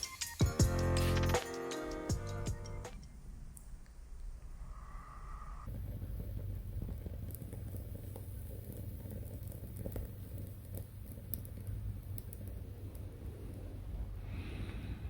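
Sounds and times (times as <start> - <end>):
background music: 0.0 - 3.0
low steady rumble: 2.2 - 15.0
light crackles and ticks: 5.7 - 14.9.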